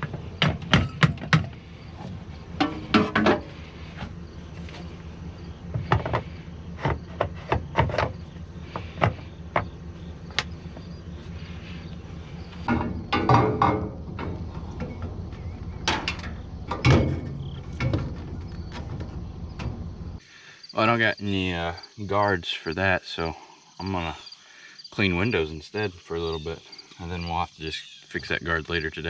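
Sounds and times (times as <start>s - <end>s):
metallic knocks and clanks: 0.0s - 1.7s, 2.6s - 3.6s, 12.6s - 20.0s
insects chirping: 0.0s - 29.0s
steady low hum: 0.0s - 29.0s.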